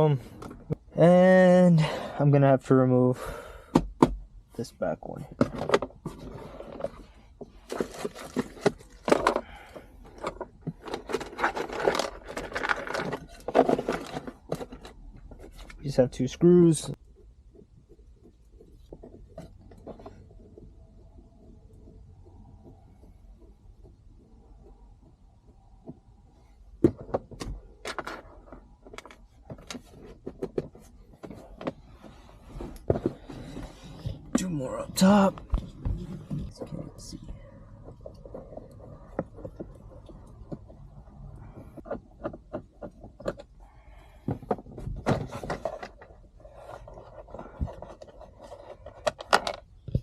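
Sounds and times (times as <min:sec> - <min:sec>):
scraping and rustling: 0:05.4 - 0:15.9.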